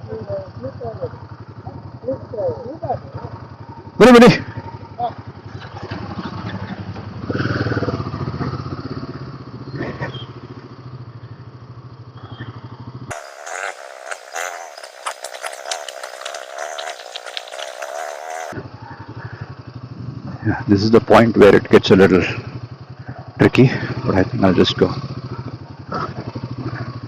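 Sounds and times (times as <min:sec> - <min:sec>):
motorcycle engine running: 0:00.0 - 0:27.0
rapid clattering clicks: 0:13.1 - 0:18.6.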